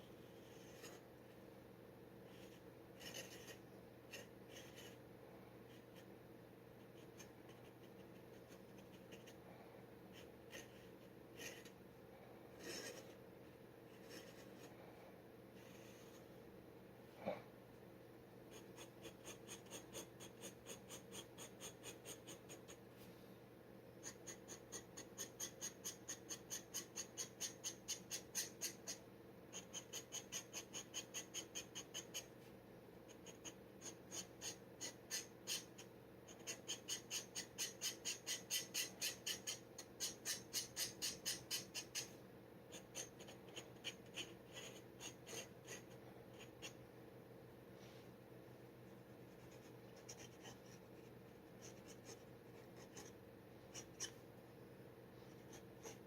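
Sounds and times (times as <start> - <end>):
pen nib scratching paper: 0.0 - 1.0, 2.2 - 5.0, 5.7 - 6.1, 6.8 - 9.4, 10.1 - 11.8, 12.6 - 13.2, 13.9 - 14.7, 18.5 - 22.8, 24.0 - 32.3, 33.1 - 46.8, 48.9 - 54.2, 55.3 - 56.0.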